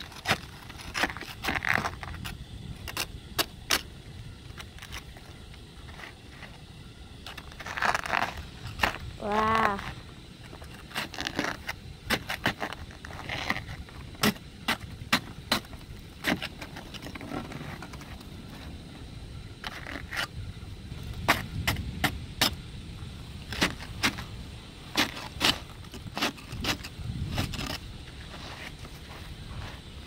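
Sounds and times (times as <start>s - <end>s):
scraper chipping ice off car: 0.0s - 3.9s, 10.5s - 18.2s, 23.4s - 24.3s, 24.9s - 27.9s.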